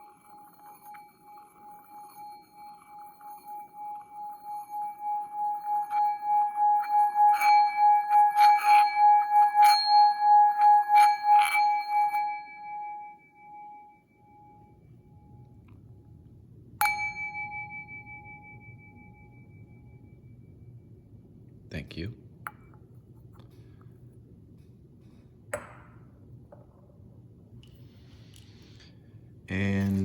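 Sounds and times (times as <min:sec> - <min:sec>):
singing bowl struck and ringing: 0:00.0 - 0:15.4, 0:16.8 - 0:20.9
singing bowl pulsing tone: 0:00.0 - 0:15.6, 0:16.8 - 0:21.2.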